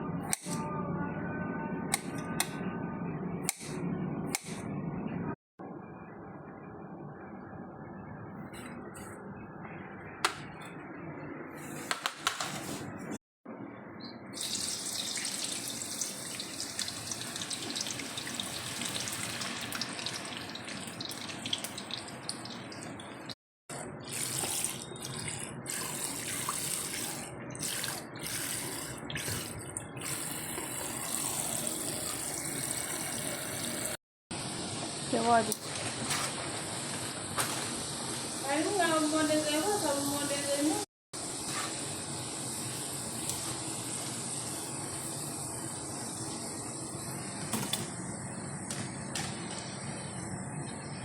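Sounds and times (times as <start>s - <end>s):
tap water running into sink: 14.4s - 22.9s.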